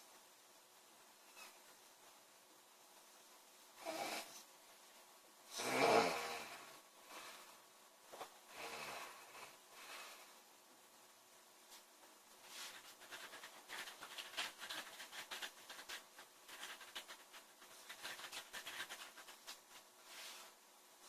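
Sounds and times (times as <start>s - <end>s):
woman snoring: 3.8s - 4.4s, 5.5s - 7.4s, 8.5s - 10.3s.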